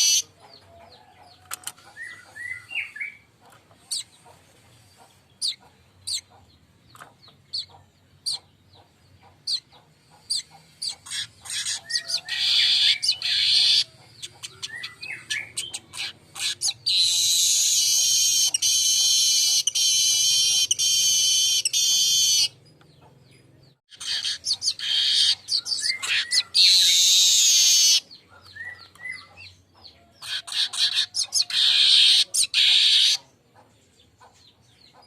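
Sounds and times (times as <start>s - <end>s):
bird buzzing song: 0.0s - 0.3s, 5.0s - 29.2s
bird chirping: 0.0s - 35.0s.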